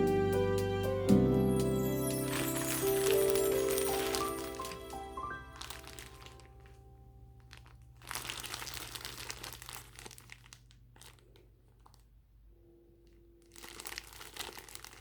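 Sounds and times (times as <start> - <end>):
plastic packaging crinkling: 1.9 - 12.2, 13.4 - 15.0.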